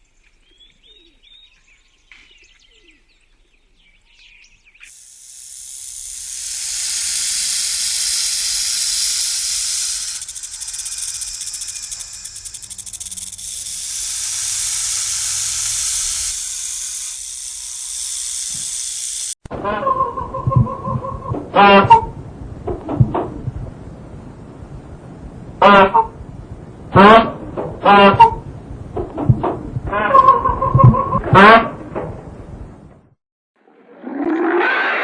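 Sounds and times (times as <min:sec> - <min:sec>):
loud fluttering hiss: 0:04.9 - 0:19.4.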